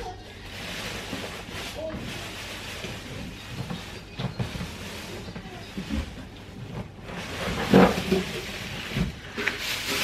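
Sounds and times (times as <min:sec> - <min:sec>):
packaging rustling: 0:06.8 - 0:10.0.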